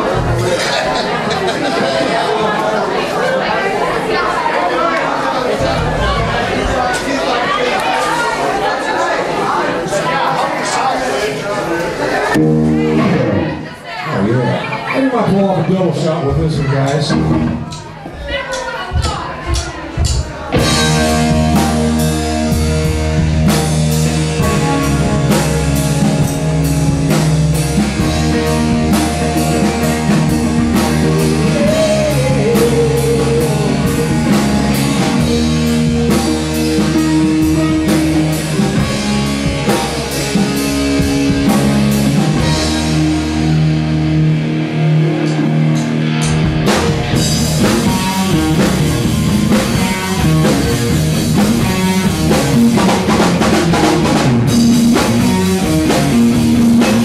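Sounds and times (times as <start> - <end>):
bass guitar: 0.0 - 1.9, 5.5 - 7.5, 12.3 - 15.0, 15.6 - 57.0
live rock band playing: 0.0 - 2.3, 12.3 - 57.0
drum kit beat: 16.3 - 57.0.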